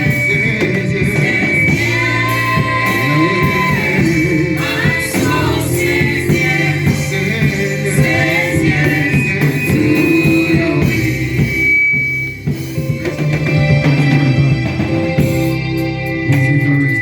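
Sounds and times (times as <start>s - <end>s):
gospel singing: 0.0s - 12.0s
amplified band playing: 0.0s - 17.0s.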